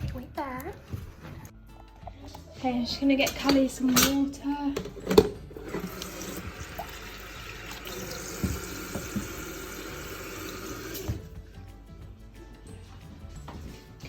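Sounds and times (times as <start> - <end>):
water tap running: 5.4 - 11.4.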